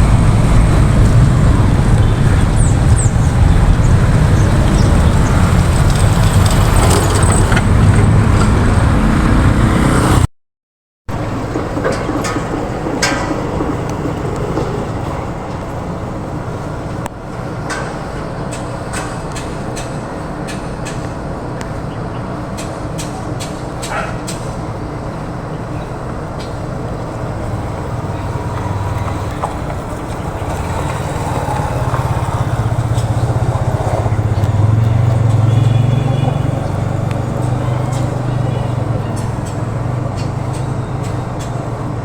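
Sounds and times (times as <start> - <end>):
heavy engine rumbling: 0.0 - 10.3, 11.1 - 42.0
sharp clicks and knocks: 11.3 - 15.8.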